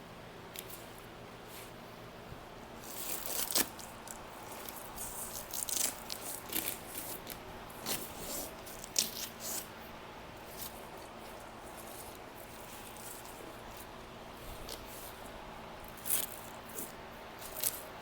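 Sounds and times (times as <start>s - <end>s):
gear crinkling and rustling: 2.8s - 9.6s.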